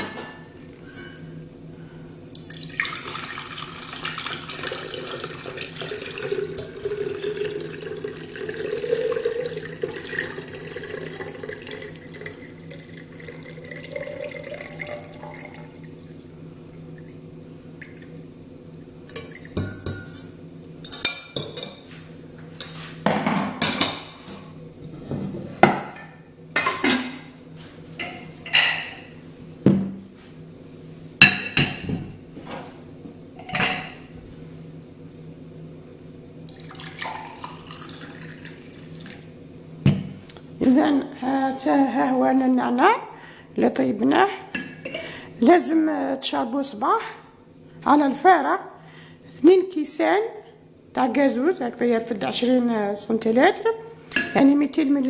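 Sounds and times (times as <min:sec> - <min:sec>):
clinks of pots and glass: 0:00.0 - 0:01.4
tea pouring through a strainer: 0:02.4 - 0:16.2, 0:36.5 - 0:39.2.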